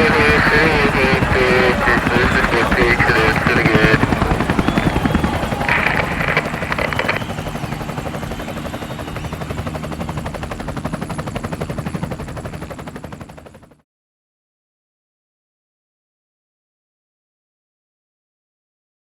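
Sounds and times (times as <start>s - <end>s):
helicopter rotor chopping: 0.0s - 13.8s.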